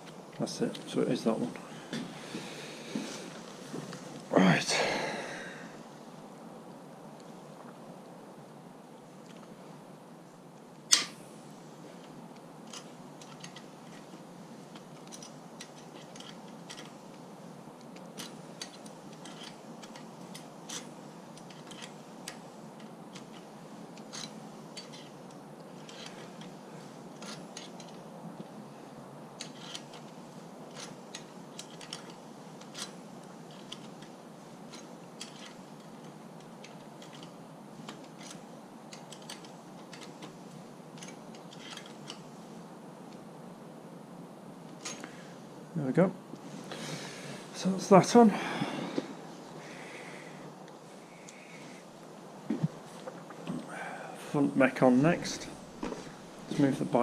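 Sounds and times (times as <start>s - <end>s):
metallic clicks of bicycle parts: 14.8s - 17.0s, 29.4s - 30.1s, 41.0s - 42.2s.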